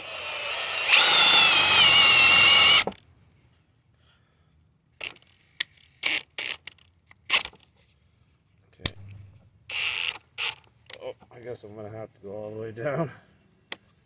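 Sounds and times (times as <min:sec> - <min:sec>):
drill bit cutting wood: 0:00.0 - 0:02.9
drill motor whine: 0:00.0 - 0:02.9.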